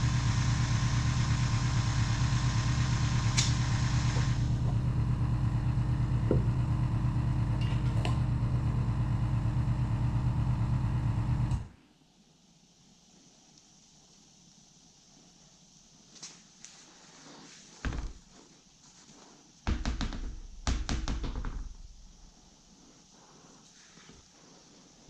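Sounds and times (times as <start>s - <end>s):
motorcycle engine idling: 0.0s - 11.8s, 19.7s - 22.4s.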